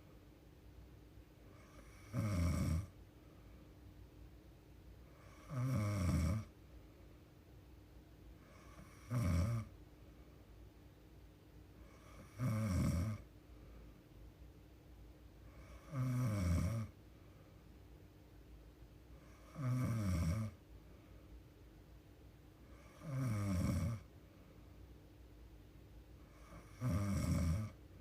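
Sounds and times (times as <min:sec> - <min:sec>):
woman snoring: 0:01.5 - 0:02.9, 0:05.2 - 0:06.5, 0:08.5 - 0:09.7, 0:11.8 - 0:13.2, 0:15.6 - 0:16.9, 0:19.2 - 0:20.6, 0:22.7 - 0:24.1, 0:26.3 - 0:27.8.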